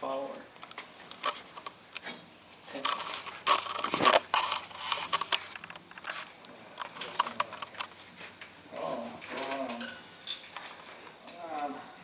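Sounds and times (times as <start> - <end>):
engine parts scraping and clicking: 2.8 - 8.1.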